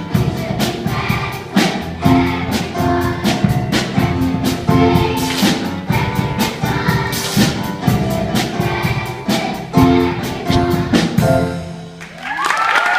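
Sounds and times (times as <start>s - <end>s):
group singing: 0.0s - 4.0s, 4.7s - 11.1s
steady drum beat: 0.0s - 12.0s.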